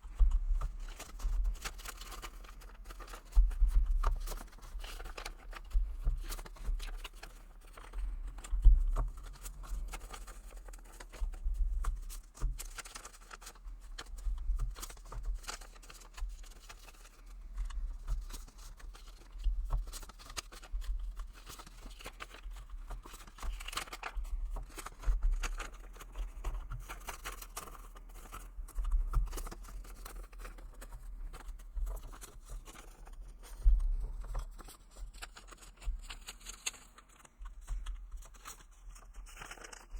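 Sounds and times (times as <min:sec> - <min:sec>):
paper banknotes rustling: 0:34.2 - 0:39.8.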